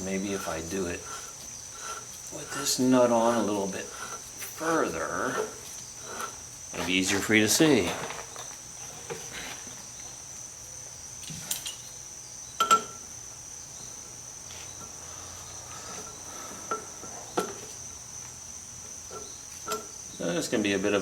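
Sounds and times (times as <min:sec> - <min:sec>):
metal clinks and taps: 0:12.6 - 0:13.0.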